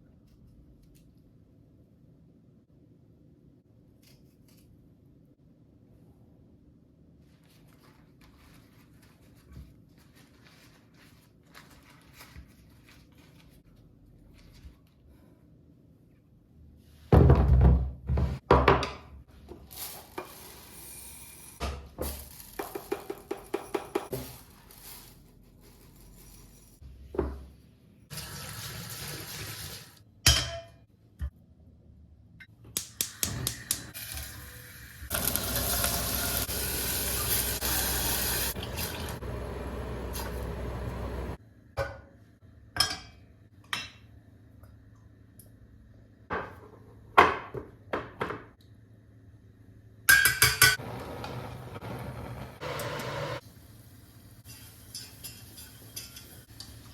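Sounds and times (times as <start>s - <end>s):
water running from a tap: 28.1s - 30.0s, 33.3s - 40.8s
dishes and utensils clinking: 54.4s - 56.8s.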